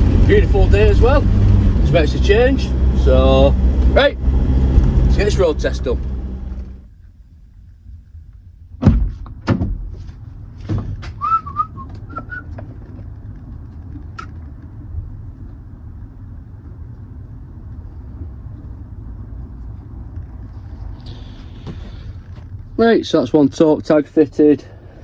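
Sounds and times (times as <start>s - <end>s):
heavy thunks: 0.0s - 6.8s, 8.8s - 12.7s
truck engine running: 0.0s - 6.9s
short warbling whistle: 11.2s - 12.5s.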